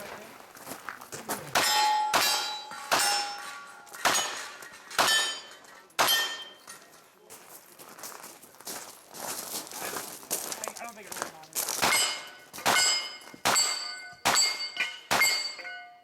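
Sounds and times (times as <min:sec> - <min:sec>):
shots hitting steel targets: 0:01.5 - 0:06.8, 0:11.8 - 0:15.9
steel target ringing: 0:01.6 - 0:06.7, 0:11.8 - 0:16.0.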